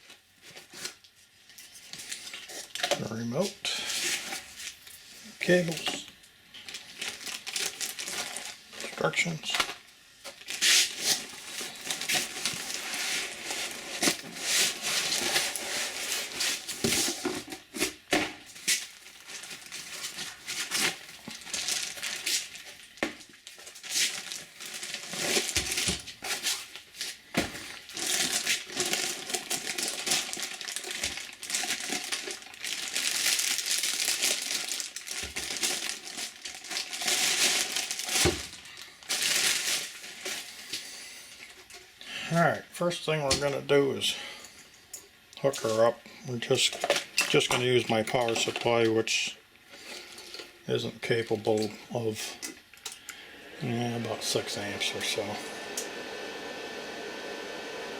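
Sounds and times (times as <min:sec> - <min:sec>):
packaging crinkling: 0:05.5 - 0:42.0, 0:46.5 - 0:49.2.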